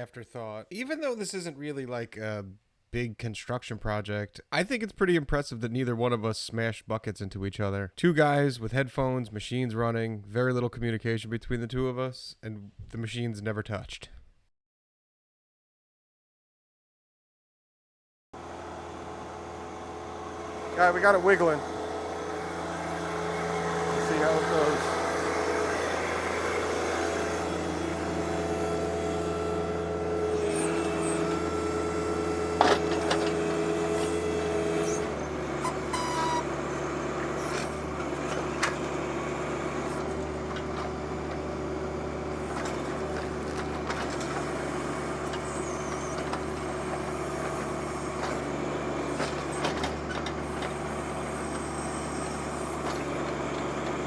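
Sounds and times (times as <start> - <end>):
tractor diesel engine running: 18.4 - 54.0.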